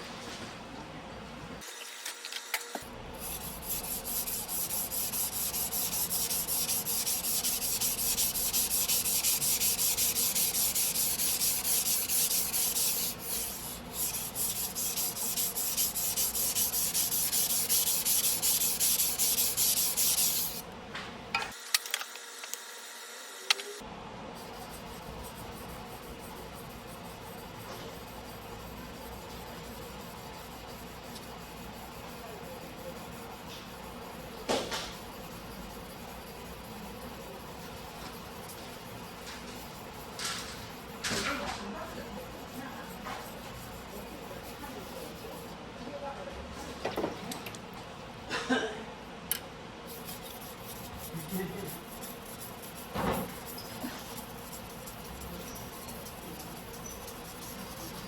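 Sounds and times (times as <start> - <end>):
knife grinding on whetstone: 3.2 - 20.6, 49.9 - 58.0.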